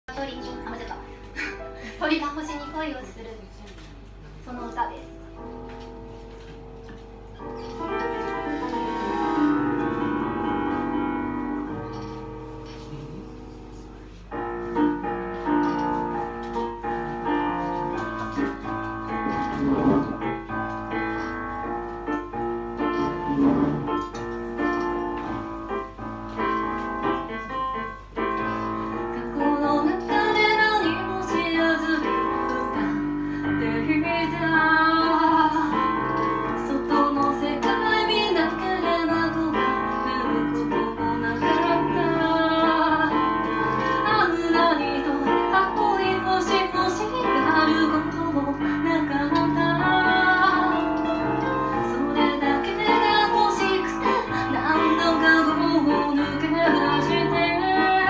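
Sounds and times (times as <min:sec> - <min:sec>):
piano playing: 0:00.0 - 0:58.0
woman singing with vibrato: 0:36.6 - 0:58.0.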